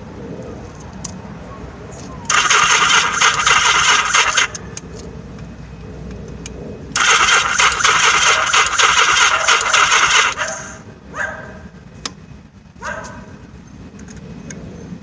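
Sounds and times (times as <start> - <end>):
motorcycle electric starter cranking: 2.3 - 4.6, 7.0 - 10.8.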